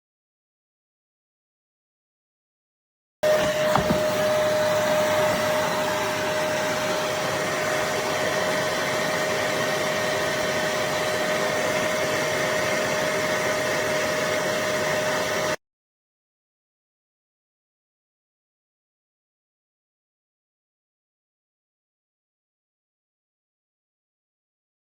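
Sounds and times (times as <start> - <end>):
carpet cleaner suction motor: 3.2 - 15.6.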